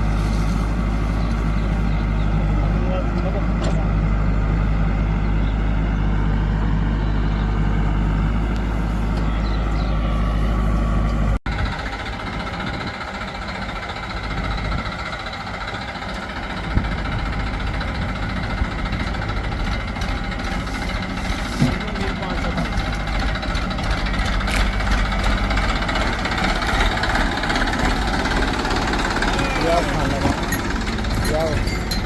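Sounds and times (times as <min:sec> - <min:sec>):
heavy diesel engine running: 0:00.0 - 0:32.0.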